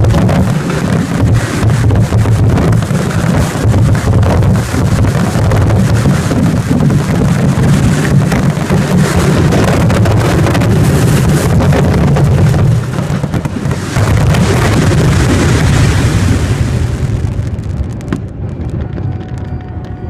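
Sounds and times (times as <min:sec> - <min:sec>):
fireworks barrage: 0:00.0 - 0:20.0
fireworks crackling: 0:00.0 - 0:20.0.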